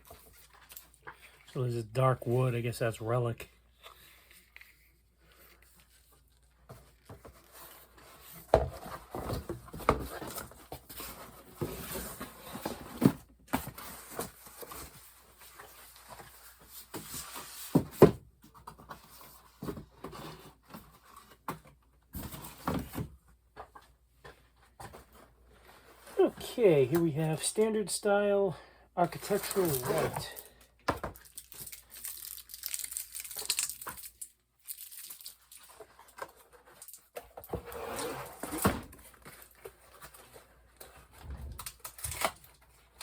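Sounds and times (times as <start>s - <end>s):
packaging rustling: 29.1s - 30.4s, 31.1s - 37.2s.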